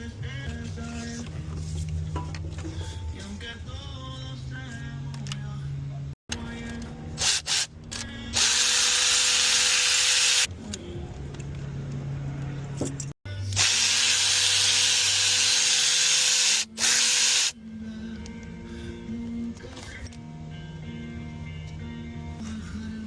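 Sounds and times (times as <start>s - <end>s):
background music: 0.0s - 9.4s, 16.3s - 23.0s
handheld power tool running: 8.4s - 10.5s, 13.6s - 17.6s.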